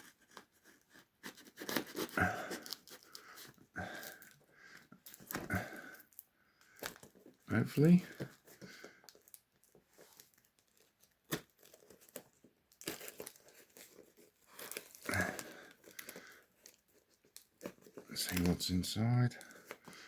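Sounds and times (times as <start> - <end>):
packaging tearing and crinkling: 1.3 - 4.4, 6.8 - 18.8.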